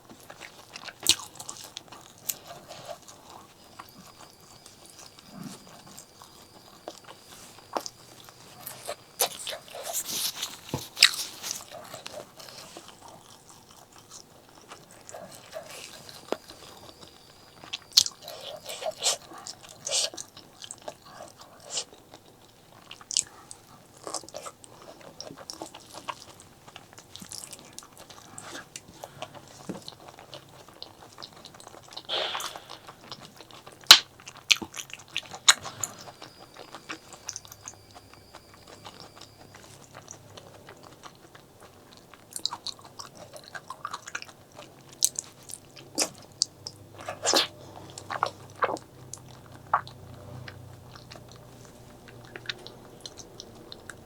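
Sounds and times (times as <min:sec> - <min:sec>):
close chewing and biting: 0:00.0 - 0:54.0.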